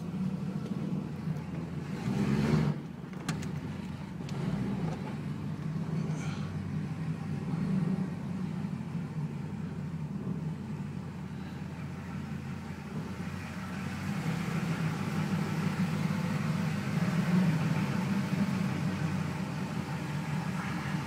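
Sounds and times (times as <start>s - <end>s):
car engine running rough: 0.0s - 21.0s.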